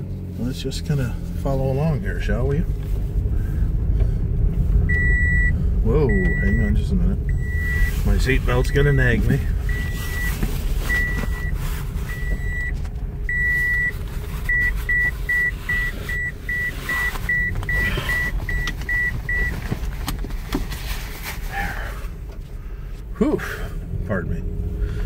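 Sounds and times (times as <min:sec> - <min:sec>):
car road and engine rumble: 0:00.0 - 0:25.0
seatbelt reminder beeps: 0:04.9 - 0:19.7.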